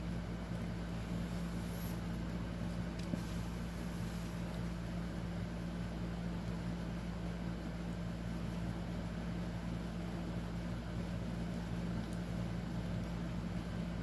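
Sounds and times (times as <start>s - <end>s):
constant hiss: 0.0s - 5.7s
steady low hum: 0.0s - 14.0s.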